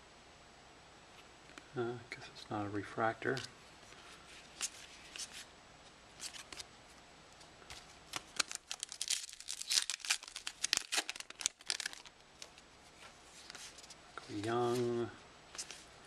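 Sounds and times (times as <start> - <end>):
foil wrapper crackling: 8.1 - 12.6
foil wrapper tearing and crinkling: 8.1 - 12.6.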